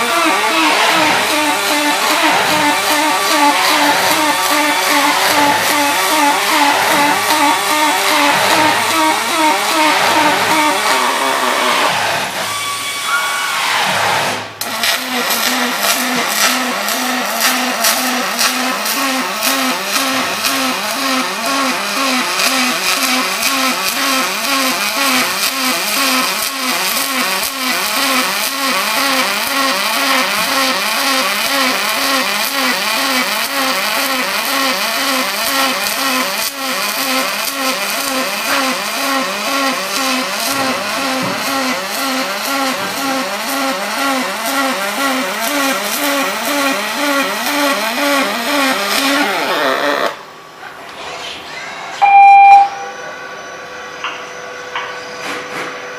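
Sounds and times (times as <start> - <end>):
welding arc buzzing and hissing: 0.0 - 13.2, 14.4 - 50.2.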